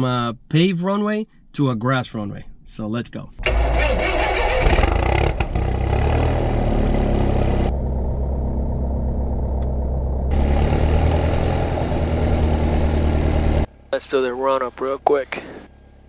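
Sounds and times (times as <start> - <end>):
propeller plane engine running: 4.8 - 13.9.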